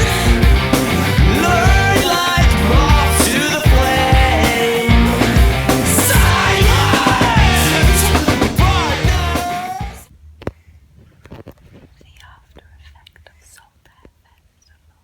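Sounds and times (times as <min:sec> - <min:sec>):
rock music with singing: 0:00.0 - 0:10.1.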